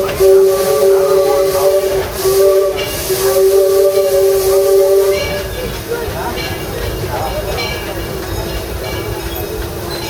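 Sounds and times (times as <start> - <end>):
steam locomotive whistle: 0.0 - 5.6
hiss of steam: 0.0 - 8.0.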